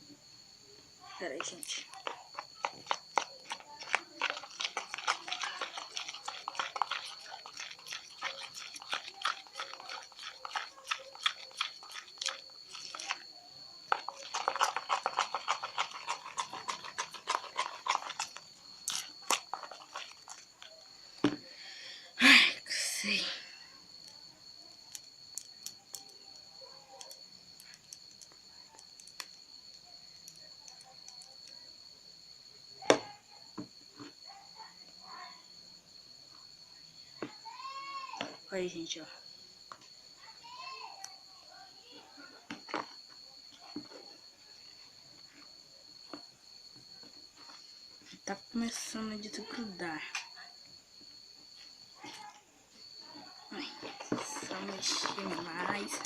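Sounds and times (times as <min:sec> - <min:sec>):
spoon stirring sticky slime: 0:01.2 - 0:21.4, 0:24.9 - 0:29.4, 0:42.4 - 0:48.3, 0:53.2 - 0:56.0.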